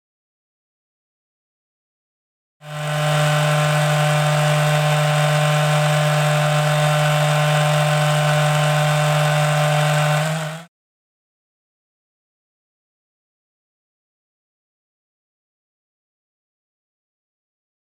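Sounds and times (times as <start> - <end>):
vacuum motor humming: 2.7 - 10.7.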